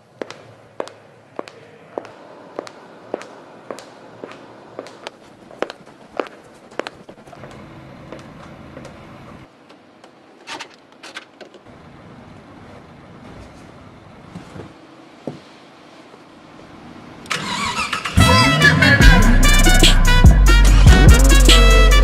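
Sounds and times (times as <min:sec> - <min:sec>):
low engine rumble: 0:00.0 - 0:09.6, 0:11.7 - 0:14.8.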